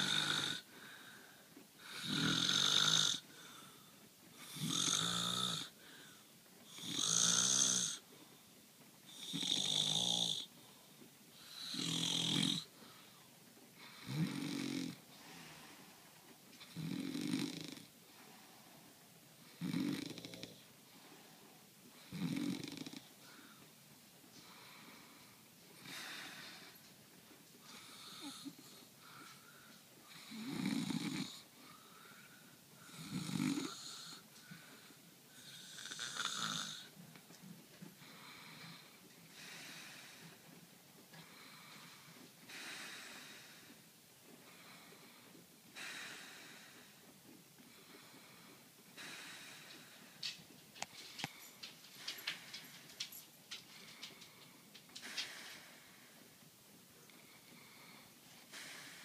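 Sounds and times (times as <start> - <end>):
man snoring: 0.0 - 0.6, 1.8 - 3.2, 4.4 - 5.7, 6.7 - 8.0, 9.2 - 10.5, 11.5 - 12.7, 14.0 - 15.0, 16.7 - 17.9, 19.6 - 20.6, 22.1 - 23.0, 30.1 - 31.4, 32.8 - 34.2, 35.4 - 36.9
soft breathing: 0.6 - 2.0, 3.2 - 4.4, 5.7 - 6.4, 15.1 - 16.5, 23.2 - 30.5, 31.4 - 33.2, 37.8 - 59.0.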